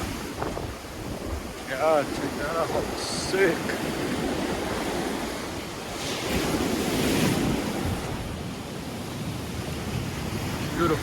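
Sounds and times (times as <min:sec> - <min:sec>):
ocean surf washing ashore: 0:00.0 - 0:11.0
wind buffeting microphone: 0:00.0 - 0:11.0.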